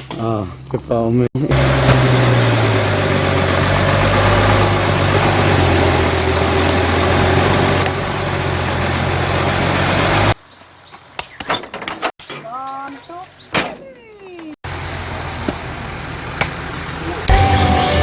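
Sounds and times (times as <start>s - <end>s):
heavy truck engine running: 1.4s - 10.4s.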